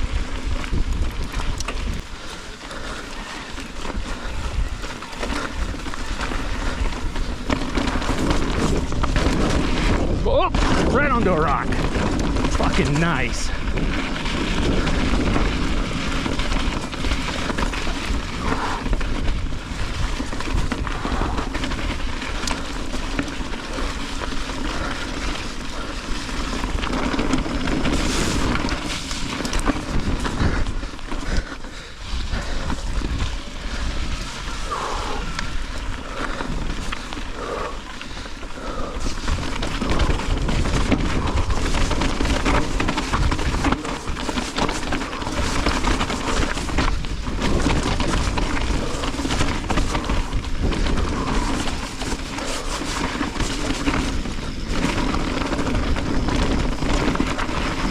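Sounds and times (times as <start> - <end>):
bike rattling over rocks: 0.0 - 57.9
wind rushing on microphone: 0.0 - 57.9.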